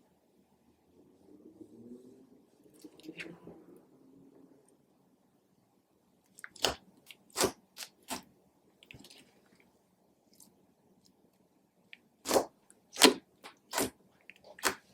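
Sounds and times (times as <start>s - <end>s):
wet clicks and pops: 6.3s - 8.2s, 14.6s - 14.9s
slime squishing by hand: 6.3s - 9.7s, 11.9s - 14.9s.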